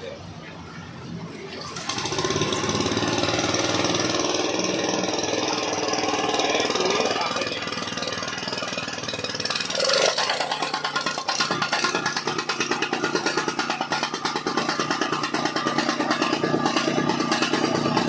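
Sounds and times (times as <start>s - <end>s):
tamping rammer engine knocking: 1.6s - 18.0s.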